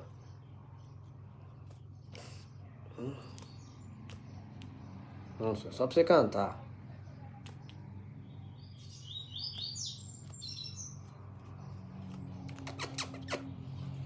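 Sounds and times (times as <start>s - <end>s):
bird chirping: 6.9s - 14.0s.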